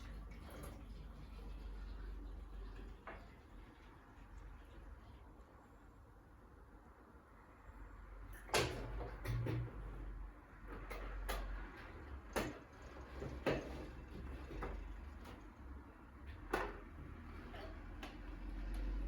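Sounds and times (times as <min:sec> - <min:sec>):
knocks of household objects: 0:10.8 - 0:15.5.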